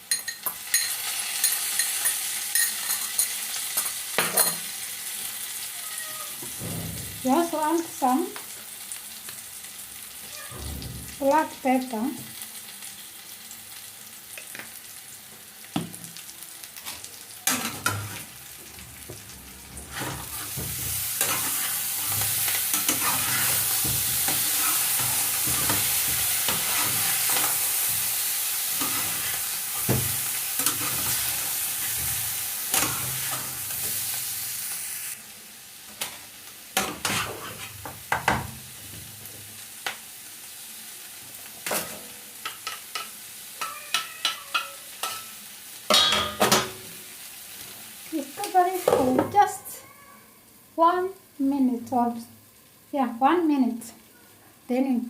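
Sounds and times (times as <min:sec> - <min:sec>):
loud sizzle: 0:00.0 - 0:55.0
potatoes frying in a pan: 0:00.0 - 0:55.0
utensil scraping a pan: 0:19.7 - 0:34.0, 0:36.8 - 0:37.9.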